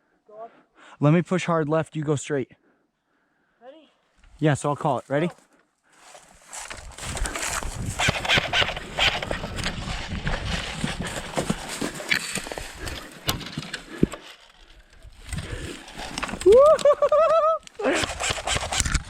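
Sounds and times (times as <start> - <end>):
footsteps through brush: 4.2 - 18.9
sharp clicks: 7.9 - 9.7, 17.6 - 19.0.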